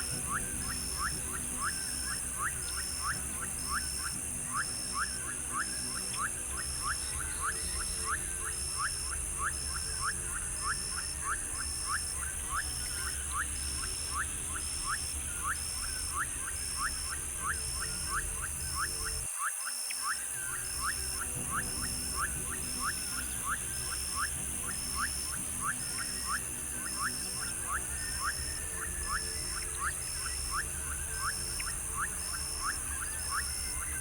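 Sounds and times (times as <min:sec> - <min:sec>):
high-pitched insect drone: 0:00.0 - 0:34.0.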